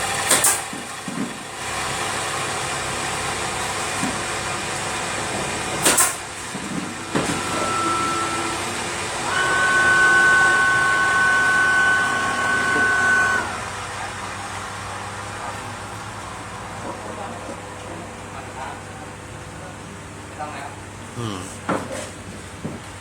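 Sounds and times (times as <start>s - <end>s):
high machine whine: 7.0s - 13.7s
lathe machine hum: 7.0s - 13.8s.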